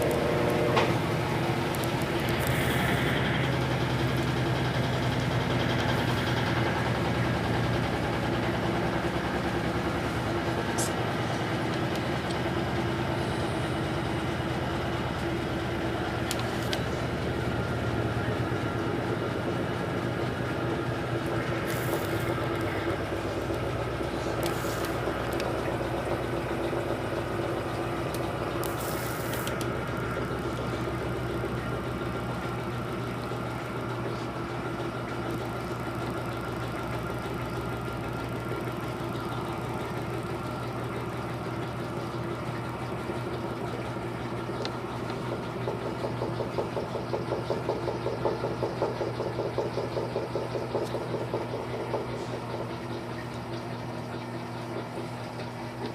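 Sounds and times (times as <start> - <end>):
washing machine motor hum: 0.0 - 55.9
short hissing bursts: 28.6 - 29.5.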